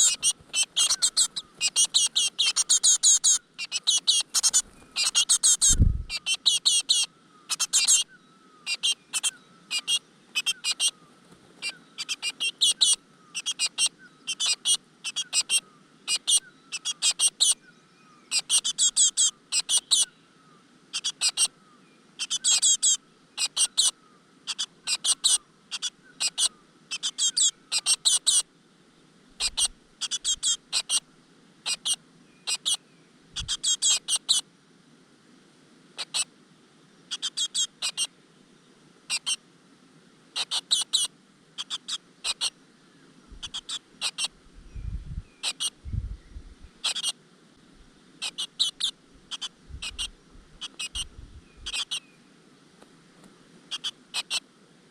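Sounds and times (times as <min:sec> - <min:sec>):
nestlings chirping: 0:00.0 - 0:08.0, 0:08.6 - 0:11.0, 0:11.6 - 0:17.6, 0:22.2 - 0:23.9, 0:24.5 - 0:28.4, 0:29.4 - 0:31.0, 0:31.7 - 0:32.8, 0:33.4 - 0:34.4, 0:43.3 - 0:47.1, 0:48.2 - 0:52.0, 0:53.7 - 0:54.4.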